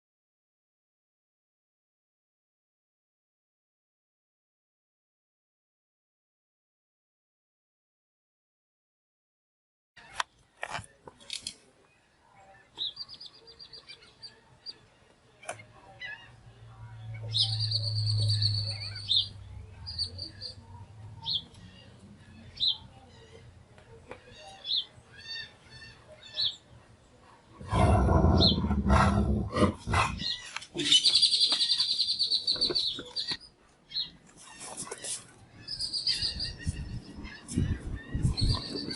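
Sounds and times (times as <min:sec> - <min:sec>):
birds chirping: 0:10.0 - 0:38.9.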